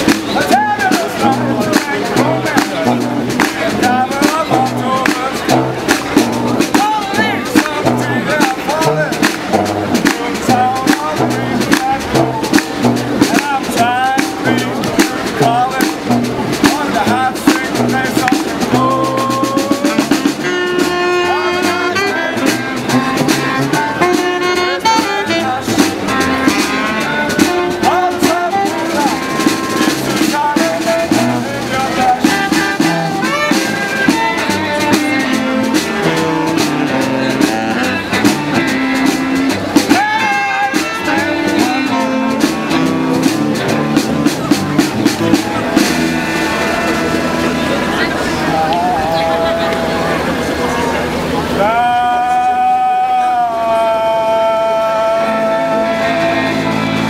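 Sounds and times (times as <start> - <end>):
street band playing funky music: 0.0 - 57.0.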